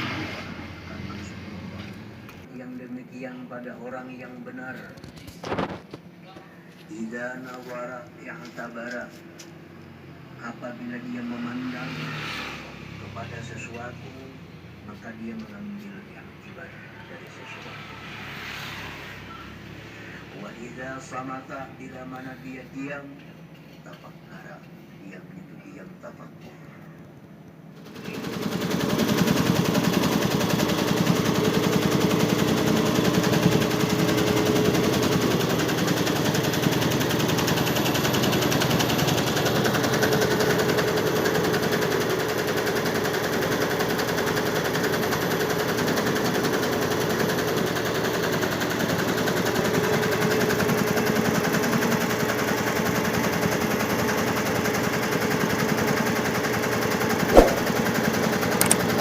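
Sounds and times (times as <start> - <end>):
faint machine hum: 0.4 - 11.8, 19.3 - 28.4.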